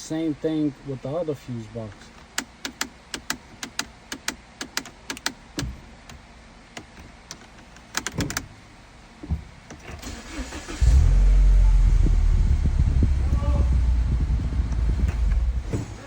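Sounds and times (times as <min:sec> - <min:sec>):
fuse box clicking: 0:02.2 - 0:08.5.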